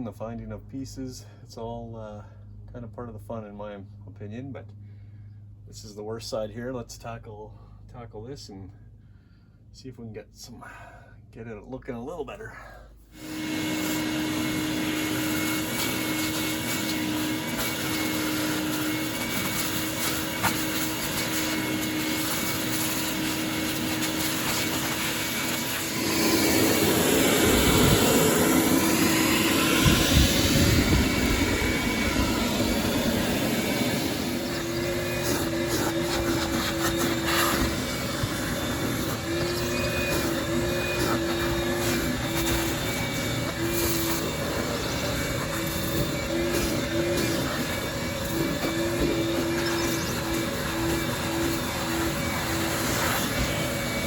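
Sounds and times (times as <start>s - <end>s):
shop vacuum motor whine: 13.1s - 54.0s.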